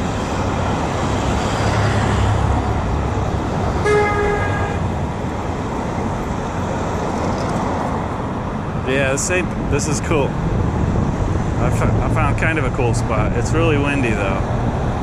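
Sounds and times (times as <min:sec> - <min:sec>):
road traffic passing: 0:00.0 - 0:15.0
car horn honk: 0:03.8 - 0:04.9
wind on microphone: 0:09.4 - 0:13.5.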